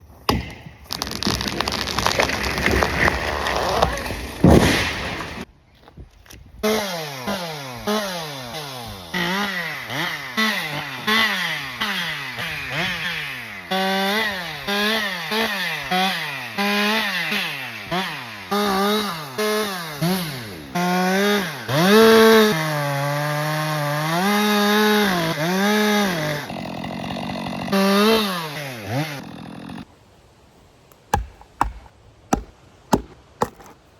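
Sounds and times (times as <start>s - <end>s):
chainsaw cutting logs: 6.6s - 29.9s, 30.9s - 33.9s
heavy thud: 31.1s - 33.8s.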